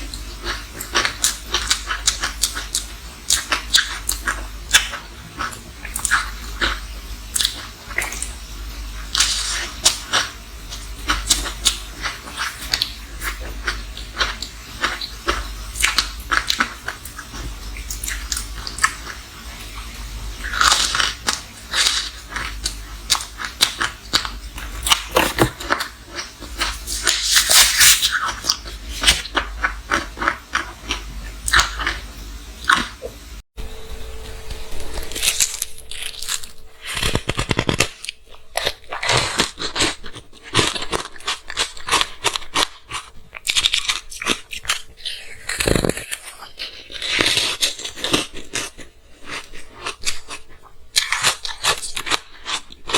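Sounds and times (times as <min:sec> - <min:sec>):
crunching and chewing ice: 0:11.0 - 0:19.2, 0:20.4 - 0:32.0, 0:34.9 - 0:52.9.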